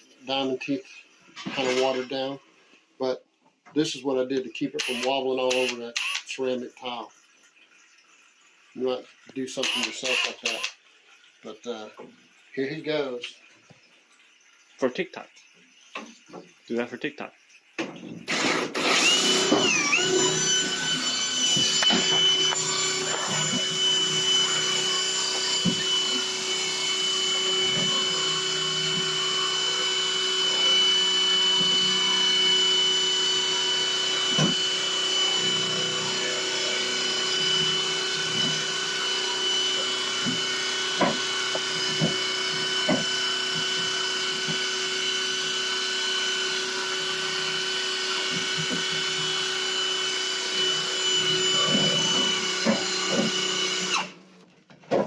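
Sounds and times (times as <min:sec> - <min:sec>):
electric drill grinding tile: 0:04.8 - 0:06.4, 0:09.6 - 0:10.8, 0:18.3 - 0:54.2.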